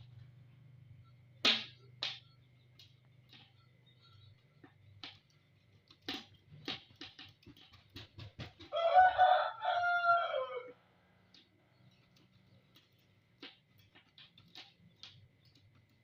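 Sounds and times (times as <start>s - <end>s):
rooster crowing: 8.7s - 10.8s.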